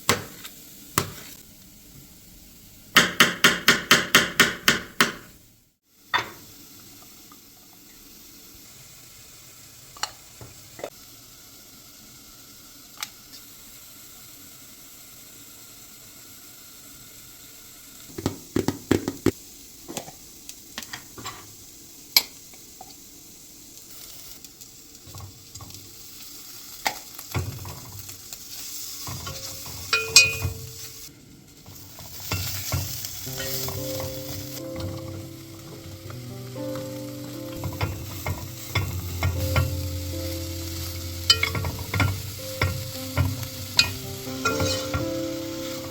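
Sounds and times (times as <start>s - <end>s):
food sizzling in a pan: 0.0s - 4.7s, 5.3s - 45.9s
utensil scraping a pan: 28.9s - 35.9s, 37.5s - 39.8s, 41.2s - 45.9s.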